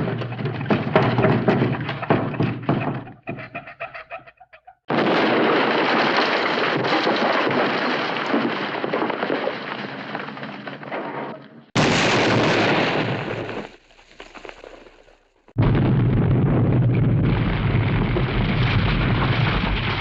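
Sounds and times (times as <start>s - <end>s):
explosion blasts rumbling: 4.9s - 13.6s, 15.6s - 20.0s.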